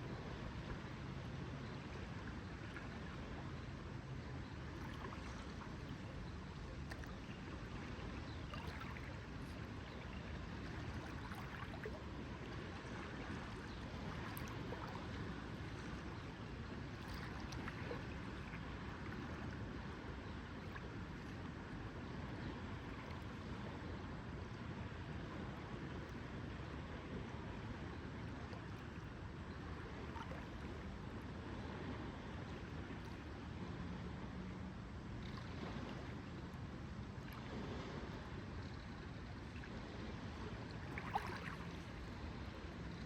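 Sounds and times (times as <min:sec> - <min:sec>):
water lapping at shore: 0:00.0 - 0:43.0
small clicks and splashes: 0:06.8 - 0:07.3, 0:08.5 - 0:09.6, 0:14.2 - 0:15.1.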